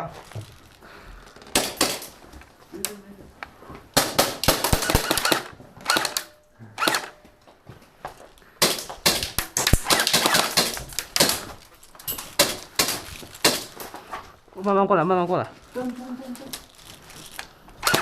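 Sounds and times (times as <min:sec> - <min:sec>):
airsoft guns firing bursts: 0:04.0 - 0:07.2, 0:08.6 - 0:11.4.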